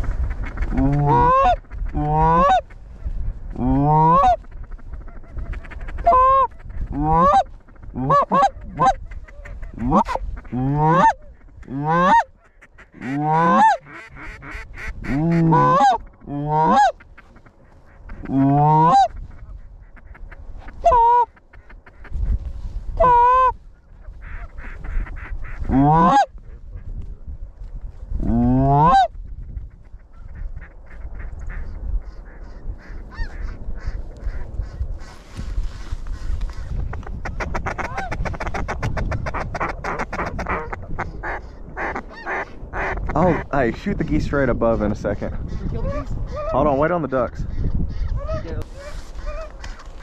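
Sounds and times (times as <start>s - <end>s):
low wind rumble: 0.0s - 50.0s
goose honking: 0.4s - 2.6s, 3.6s - 22.0s, 23.0s - 26.3s, 28.4s - 29.1s.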